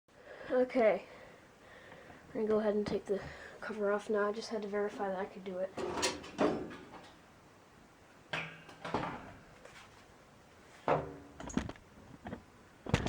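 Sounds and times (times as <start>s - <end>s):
sheet metal scraping and knocking: 10.9s - 11.6s.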